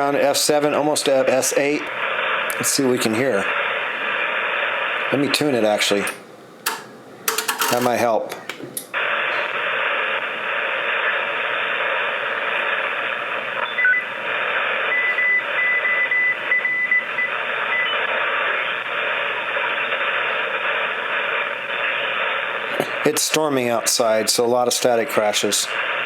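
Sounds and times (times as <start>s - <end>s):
radio static: 0.0s - 6.2s, 7.6s - 8.2s, 8.9s - 26.0s
faint on-off beeps: 13.6s - 14.1s.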